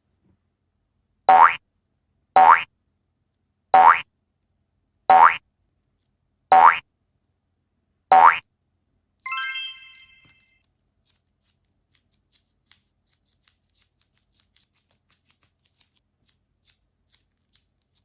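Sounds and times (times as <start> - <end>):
bright chime sound effect: 9.3 - 10.5.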